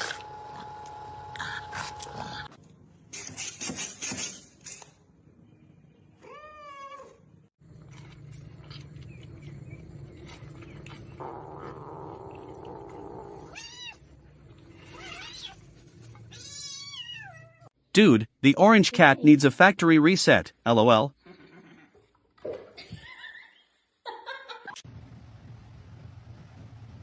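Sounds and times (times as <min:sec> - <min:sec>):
cat meowing: 0:11.6 - 0:14.0, 0:16.3 - 0:17.7.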